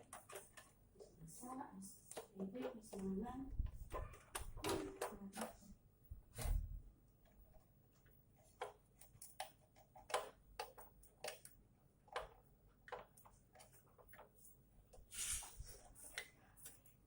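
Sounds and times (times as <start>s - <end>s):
tools clicking and tapping: 8.6s - 14.4s.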